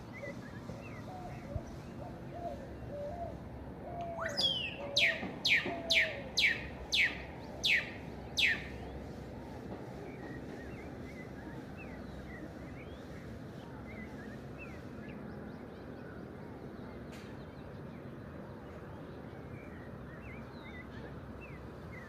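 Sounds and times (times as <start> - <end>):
bird calling with falling whistles: 0.0 - 8.9
bird rising sweep call: 4.2 - 8.7.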